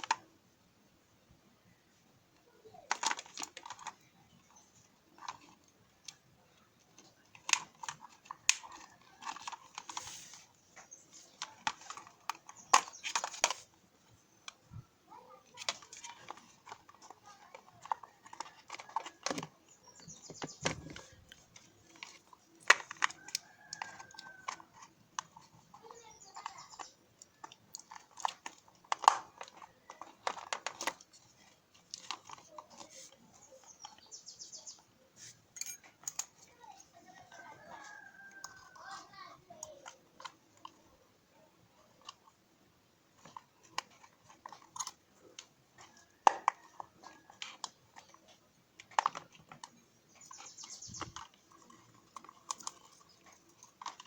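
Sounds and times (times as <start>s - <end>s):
clicks and taps of small hard parts: 2.9s - 4.0s, 6.9s - 10.0s, 15.4s - 32.9s, 43.1s - 54.0s.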